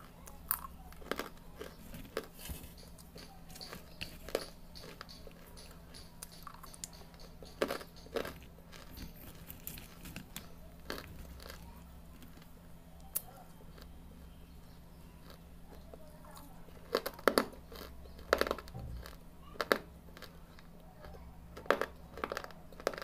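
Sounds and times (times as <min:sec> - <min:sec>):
person crunching hard brick pieces: 0:21.6 - 0:23.0.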